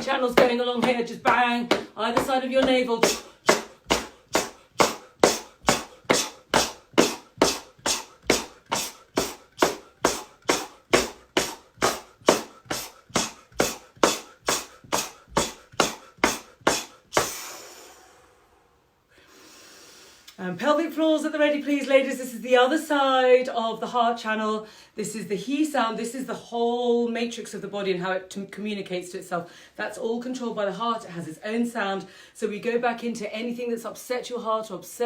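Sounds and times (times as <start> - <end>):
hands thumping belly: 0.0 - 17.4.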